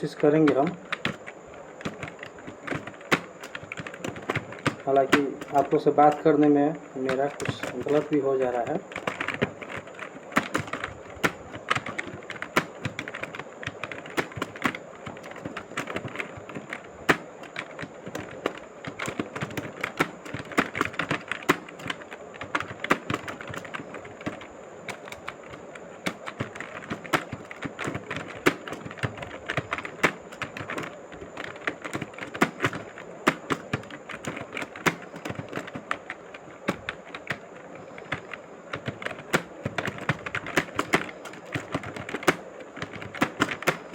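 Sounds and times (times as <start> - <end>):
phone keyboard taps: 0.3 - 6.3, 7.1 - 43.9.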